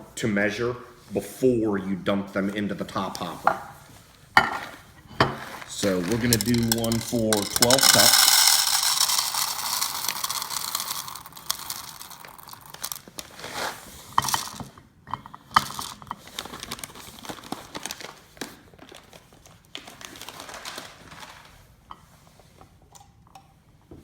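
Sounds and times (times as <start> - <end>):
coffee beans dropping into plastic cup: 5.2 - 13.2, 14.2 - 14.7
coffee bag crinkling: 5.2 - 14.6, 15.6 - 21.6.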